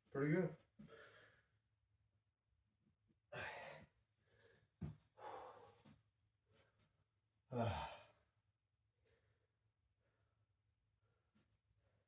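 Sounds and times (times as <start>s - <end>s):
man breathing out heavily: 3.4s - 4.6s.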